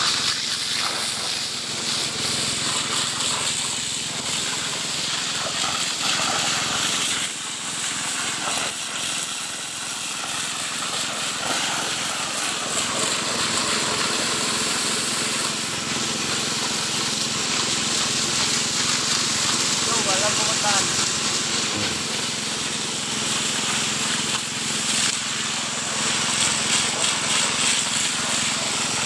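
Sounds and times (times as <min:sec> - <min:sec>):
broad rushing hiss: 0:18.4 - 0:29.0
petrol engine running steadily: 0:21.5 - 0:22.3.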